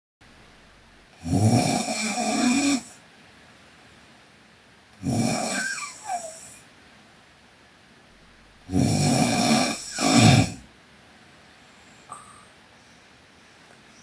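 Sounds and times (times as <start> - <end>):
girl snoring: 1.2 - 3.0, 5.0 - 6.6, 8.7 - 10.7.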